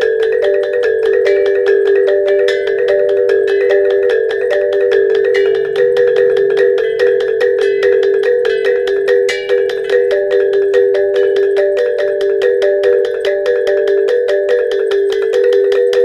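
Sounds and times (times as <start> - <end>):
rapid plucked pitched notes: 0.0 - 16.0.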